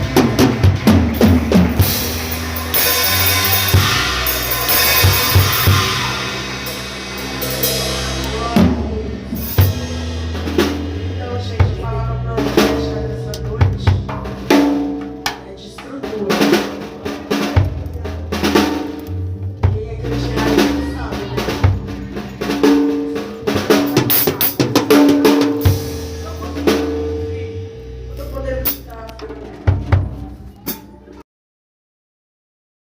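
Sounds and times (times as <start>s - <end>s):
drum kit music with bass: 0.0s - 31.2s.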